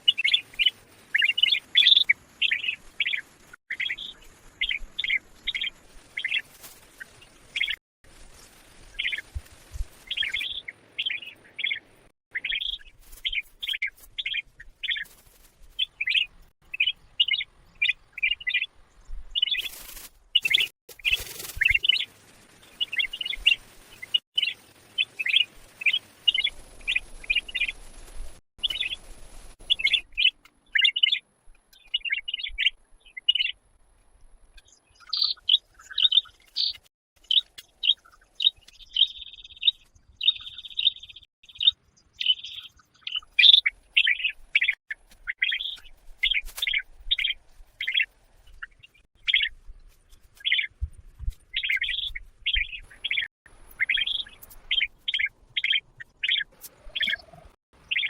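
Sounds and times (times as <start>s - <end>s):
small bird chirping: 0.0s - 33.6s, 34.5s - 58.0s.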